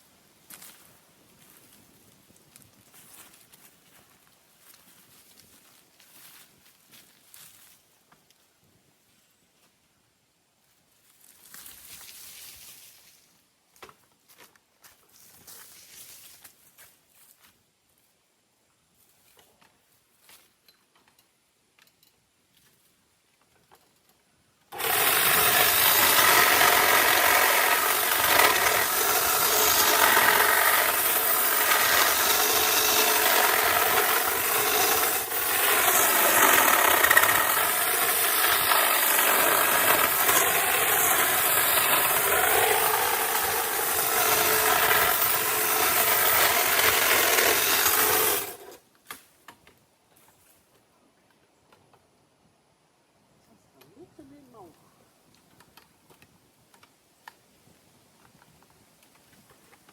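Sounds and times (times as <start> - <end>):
power saw cutting branches: 24.7 - 48.8.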